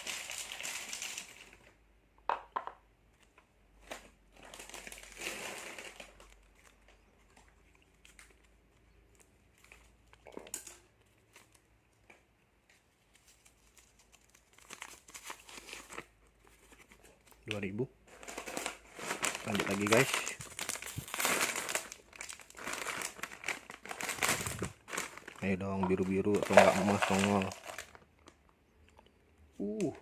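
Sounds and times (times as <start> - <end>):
plastic packets crinkling: 0.0 - 1.8, 3.8 - 11.7, 13.1 - 29.0.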